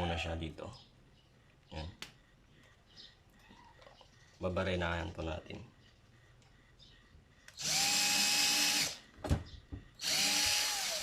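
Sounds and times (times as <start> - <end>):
electric drill whining: 7.6 - 9.0, 10.0 - 11.0.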